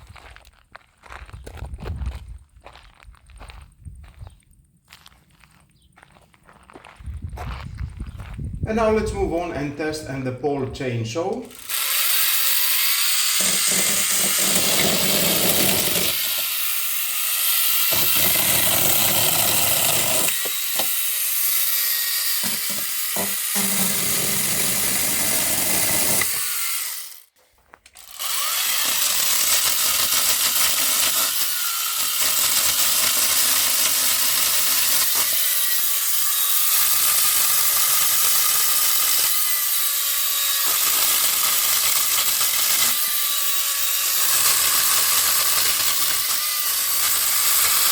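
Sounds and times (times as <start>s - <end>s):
chainsaw cutting wood: 11.3s - 47.9s.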